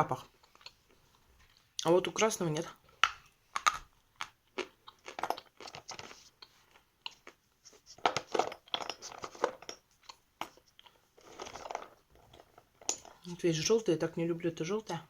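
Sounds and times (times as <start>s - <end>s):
person chewing chalk crunchily: 0.2s - 1.9s, 2.9s - 8.0s, 10.0s - 12.5s.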